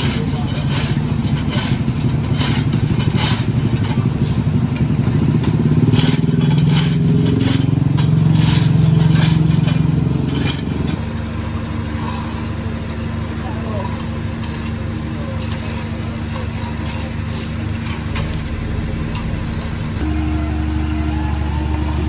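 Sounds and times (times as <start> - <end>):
diesel engine drone: 0.0 - 22.0.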